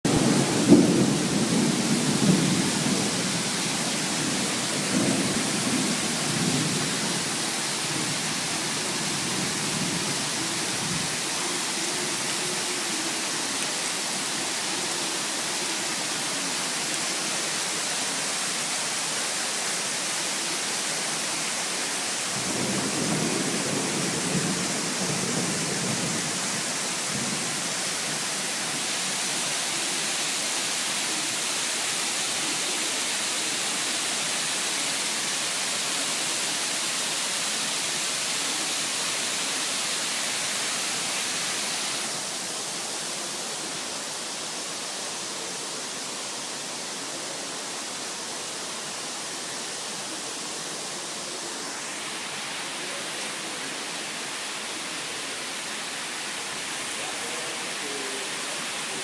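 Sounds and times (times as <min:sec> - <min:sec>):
rain hissing: 0:00.0 - 0:59.0
low rolling thunder: 0:00.1 - 0:11.5, 0:22.3 - 0:28.3.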